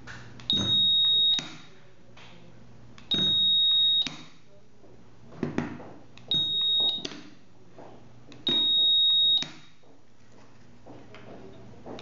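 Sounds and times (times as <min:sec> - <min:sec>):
sharp click: 0:04.0 - 0:04.4
high electronic beeps: 0:06.3 - 0:07.2.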